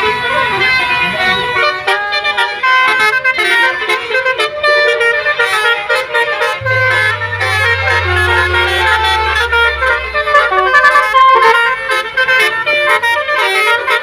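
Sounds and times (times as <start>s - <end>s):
tuned air horns playing a tune: 0.0s - 14.0s
low steady hum: 6.6s - 11.4s.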